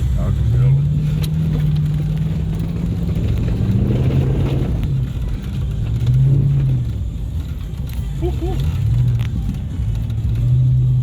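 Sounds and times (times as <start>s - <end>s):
engine revving under load: 0.3s - 5.0s.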